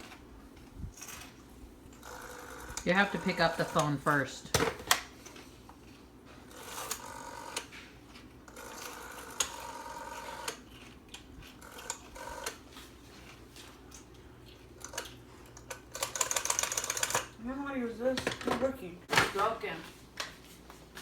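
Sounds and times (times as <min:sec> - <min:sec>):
rotary dial whirring: 0:00.0 - 0:17.4
rotary dial clicks: 0:14.8 - 0:17.3.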